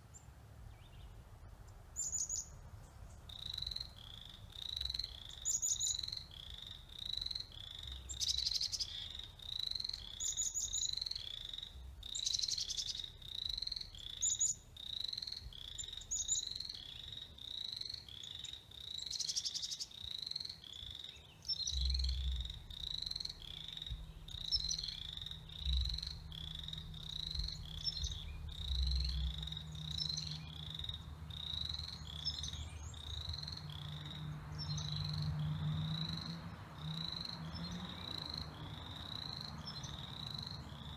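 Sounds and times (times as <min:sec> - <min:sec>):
frogs peeping: 0:02.0 - 0:40.9
high chirps: 0:21.5 - 0:37.4.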